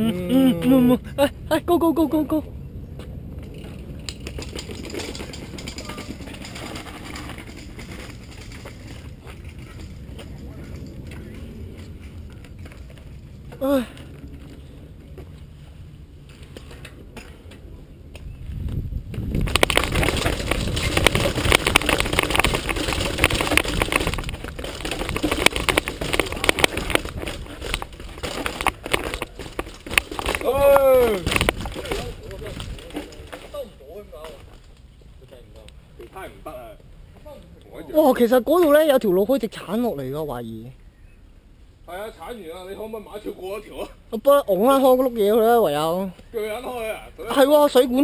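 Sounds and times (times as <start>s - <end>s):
steady low rumble: 0.7s - 33.4s
mountain bike clattering and rattling: 3.3s - 15.4s, 19.1s - 34.8s
tyres crunching over rock: 19.1s - 34.8s.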